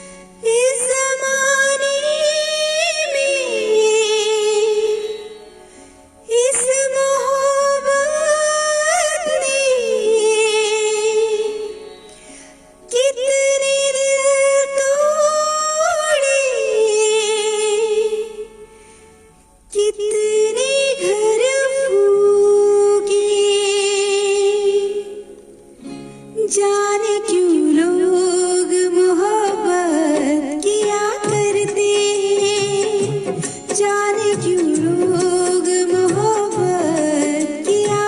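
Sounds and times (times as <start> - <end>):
soft musical accompaniment: 0.0 - 38.0.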